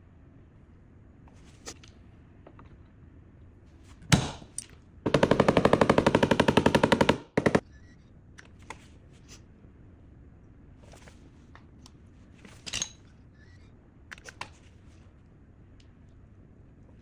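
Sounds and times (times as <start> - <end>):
rapid mechanical rattle: 5.1 - 7.6.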